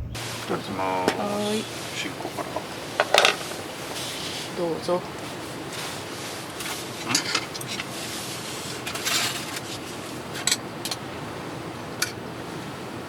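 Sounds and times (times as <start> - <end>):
steady background hiss: 0.0 - 13.0
utensil scraping: 0.2 - 10.6
utensils clinking on dishes: 0.9 - 4.3, 6.5 - 8.0, 8.6 - 9.8, 10.4 - 11.0.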